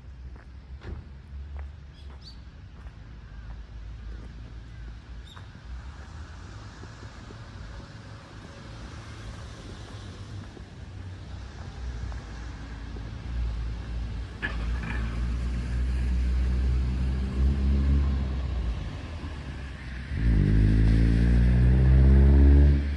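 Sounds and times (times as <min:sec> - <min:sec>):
heavy truck engine rumbling: 0:13.8 - 0:21.8.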